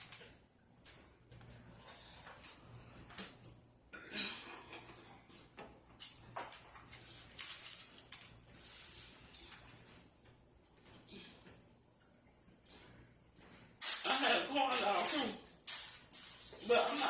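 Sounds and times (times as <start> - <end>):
food wrapper rustling: 6.1 - 10.0, 13.5 - 17.0.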